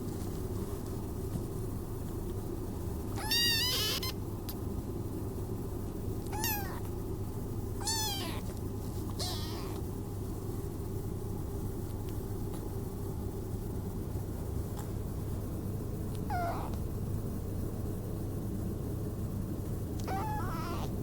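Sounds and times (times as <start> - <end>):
kitten meowing: 3.1 - 4.2, 6.3 - 6.9, 7.8 - 8.5, 9.1 - 9.8, 16.1 - 16.8, 20.0 - 21.0.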